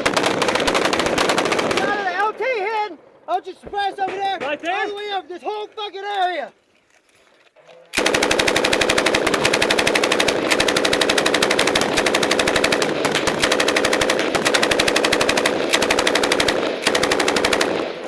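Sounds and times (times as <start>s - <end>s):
machine gun firing: 0.0s - 2.4s, 7.9s - 18.0s.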